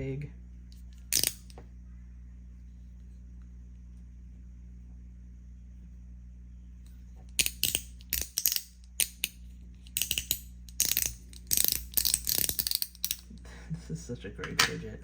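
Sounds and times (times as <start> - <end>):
fidget toy clicking: 7.4 - 13.3.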